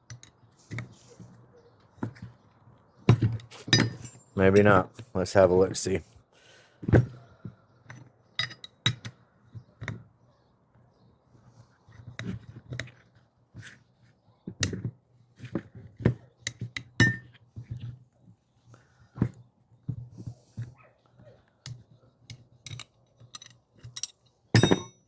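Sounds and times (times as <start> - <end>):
metal tool parts clinking: 3.4 - 4.7, 7.9 - 9.2, 16.4 - 17.4, 21.7 - 25.0.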